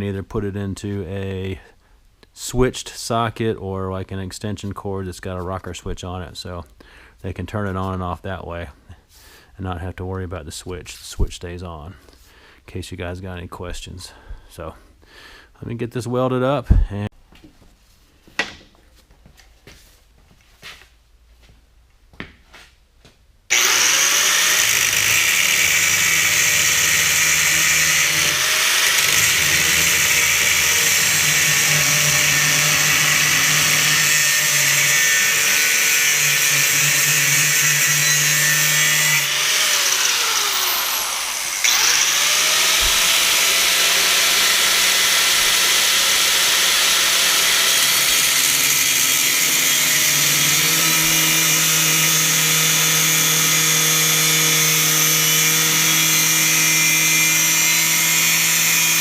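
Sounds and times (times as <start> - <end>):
electric power tool motor running: 23.5 - 59.0.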